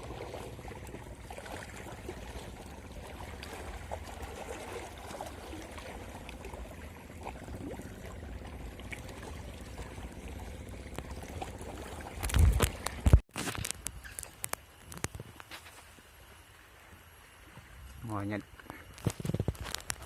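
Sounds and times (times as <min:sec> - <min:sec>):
water trickling and splashing: 0:00.0 - 0:20.0
low rumble: 0:06.0 - 0:13.2.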